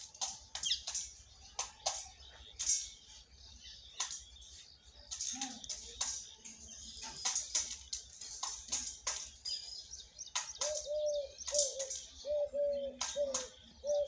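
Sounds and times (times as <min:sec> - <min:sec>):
birds chirping: 0:00.0 - 0:14.0
low bird coo: 0:10.6 - 0:14.0.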